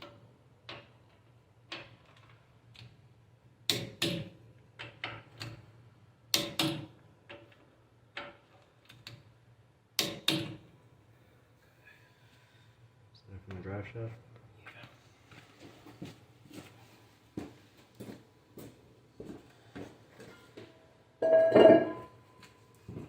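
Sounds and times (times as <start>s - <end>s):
sharp metal knocks and clicks: 0.0s - 2.9s, 3.7s - 5.7s, 6.3s - 9.2s, 10.0s - 10.7s.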